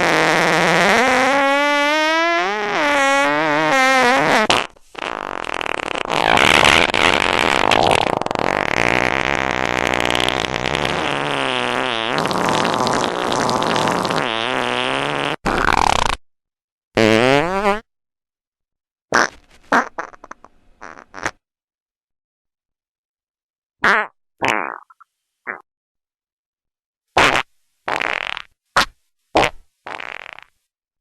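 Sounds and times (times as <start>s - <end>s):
fart sound effects: 0.0s - 16.2s, 17.0s - 17.9s, 19.1s - 21.4s, 23.8s - 25.6s, 27.2s - 30.6s.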